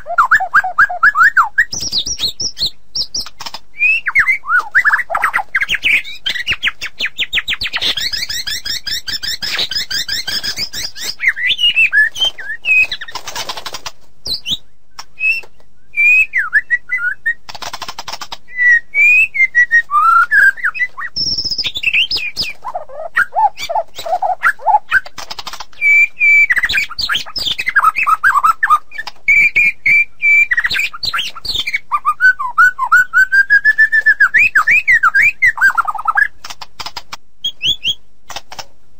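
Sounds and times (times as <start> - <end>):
bird singing varied song: 0.0 - 38.1.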